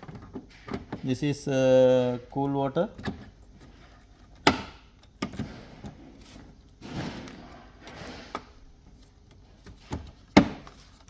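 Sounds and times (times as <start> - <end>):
scraping or rustling: 5.3 - 11.0.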